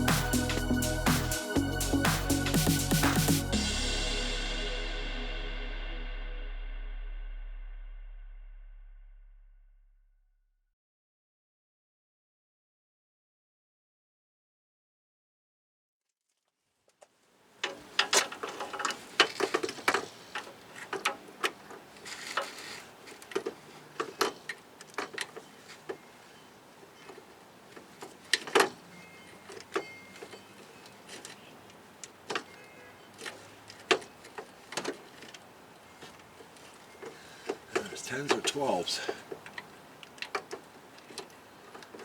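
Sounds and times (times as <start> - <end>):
metal tools clinking: 17.8 - 31.7.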